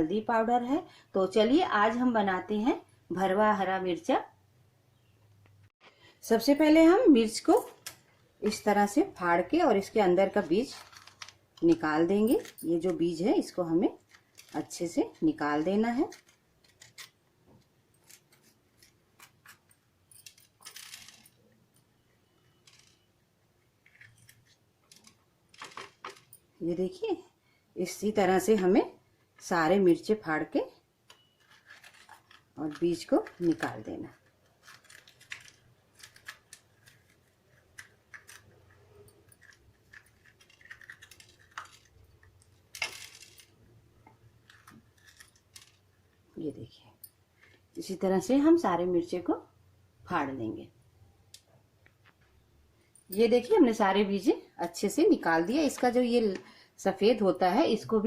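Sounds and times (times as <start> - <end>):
chillies clicking and crackling: 7.3 - 26.6, 27.9 - 46.4, 51.2 - 58.0
chillies snapping and scraping: 15.9 - 17.2, 31.5 - 43.4.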